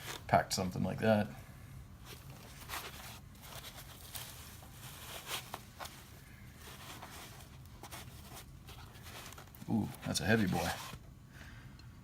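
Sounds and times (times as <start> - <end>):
packaging foam rustling: 0.0 - 0.3, 2.0 - 11.1.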